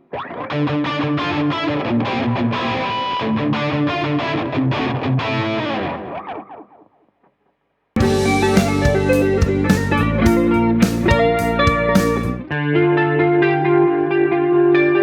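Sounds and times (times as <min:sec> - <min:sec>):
electric guitar through an amp: 0:00.0 - 0:06.8, 0:08.0 - 0:15.0.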